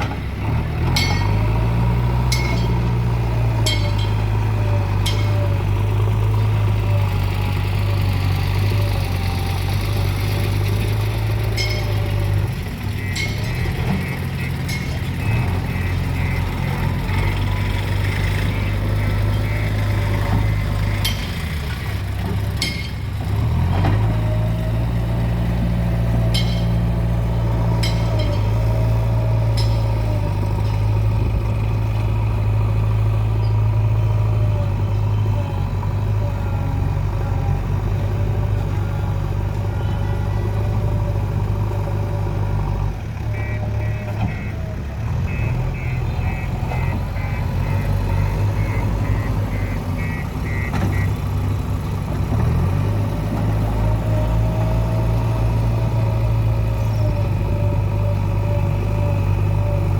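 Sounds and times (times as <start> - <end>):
diesel engine running: 0.0 - 59.9
sharp metallic clanks: 0.8 - 1.6, 2.2 - 5.7, 11.5 - 12.3, 22.6 - 23.1, 26.2 - 27.1, 27.7 - 31.0.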